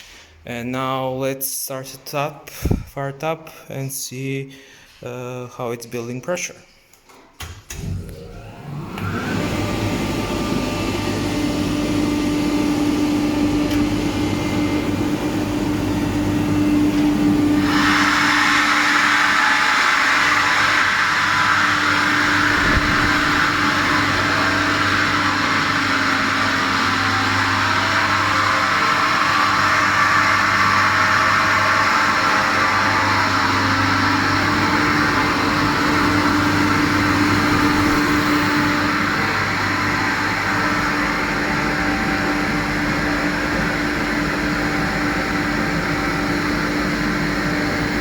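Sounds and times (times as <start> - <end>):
air compressor running: 7.7 - 48.0
loud airy hiss: 17.6 - 24.9.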